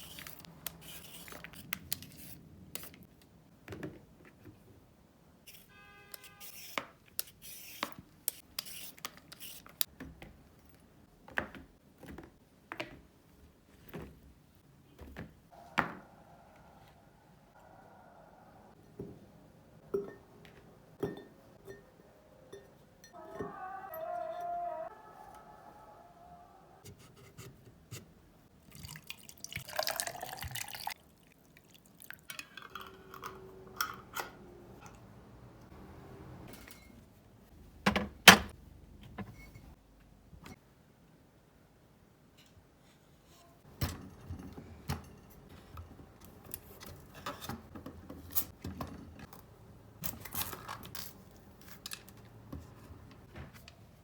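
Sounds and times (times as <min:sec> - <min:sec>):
kitchenware clinking: 0:19.9 - 0:24.5, 0:32.3 - 0:35.0
liquid pouring into a vessel: 0:28.7 - 0:32.9.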